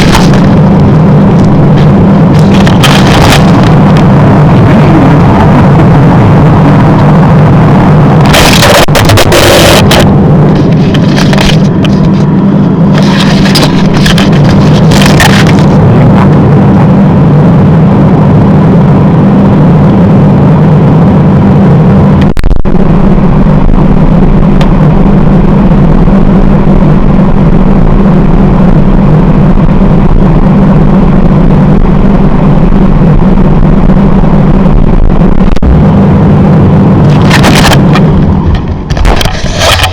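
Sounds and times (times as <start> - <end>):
freezer low hum: 0.0 - 39.9
crackling knocks: 37.1 - 39.9.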